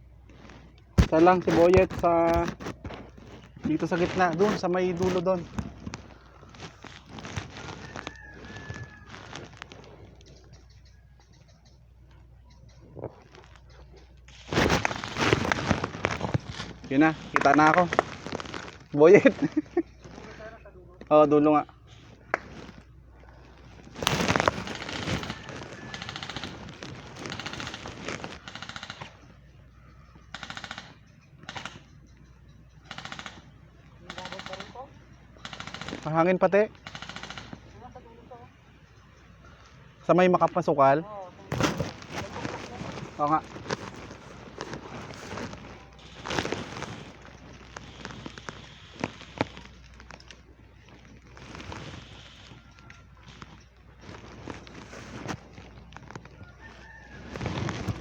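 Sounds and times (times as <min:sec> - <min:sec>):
rustling and crackling: 0:00.0 - 0:58.0
sharp clicks: 0:23.9 - 0:29.4, 0:30.2 - 0:37.8
airsoft guns firing bursts: 0:24.6 - 0:29.3, 0:30.3 - 0:31.9, 0:32.8 - 0:37.7.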